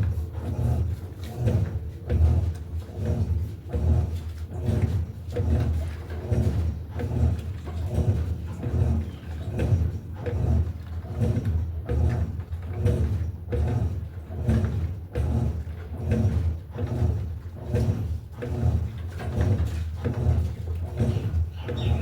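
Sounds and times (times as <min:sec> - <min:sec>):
washing machine agitating: 0:00.0 - 0:22.0
low motor hum: 0:18.6 - 0:22.0.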